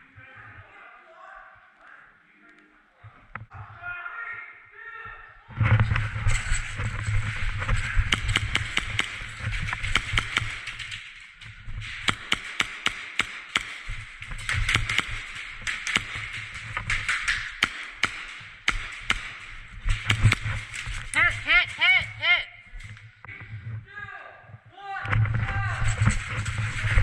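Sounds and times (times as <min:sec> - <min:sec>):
airsoft guns firing: 0:06.9 - 0:22.3.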